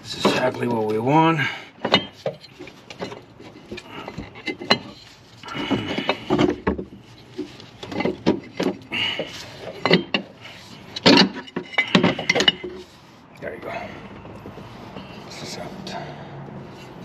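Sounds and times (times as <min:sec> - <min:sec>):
metal parts knocking and scraping: 0:01.8 - 0:12.9.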